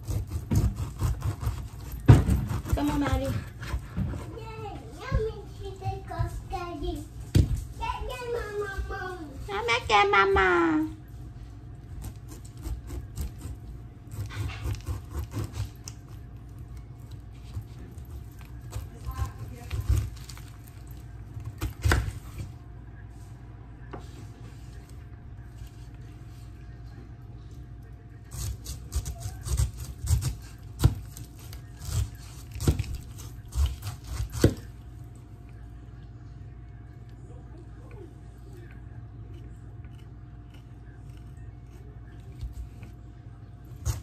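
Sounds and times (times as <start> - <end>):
knife cutting pineapple on board: 0.0 - 4.4, 12.0 - 16.2, 17.3 - 20.5, 21.4 - 22.5, 28.2 - 34.7, 39.3 - 43.0.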